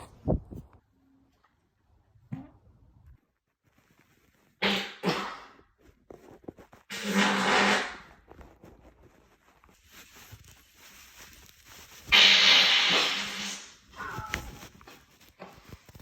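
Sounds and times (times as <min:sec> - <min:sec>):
loud farts: 0:04.6 - 0:05.6, 0:06.9 - 0:08.1, 0:12.1 - 0:13.7.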